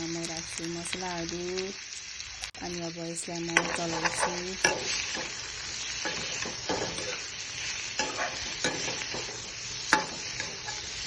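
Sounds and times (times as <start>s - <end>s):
food sizzling in hot oil: 0.0s - 11.0s
utensil scraping pan: 3.6s - 11.0s.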